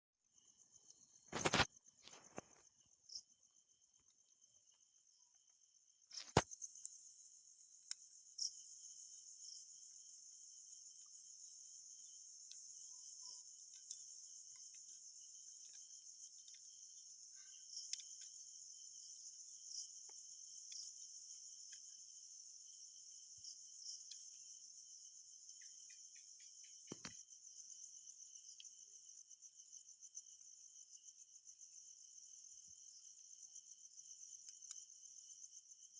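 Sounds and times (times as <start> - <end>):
night insects trilling: 0.2 - 35.9.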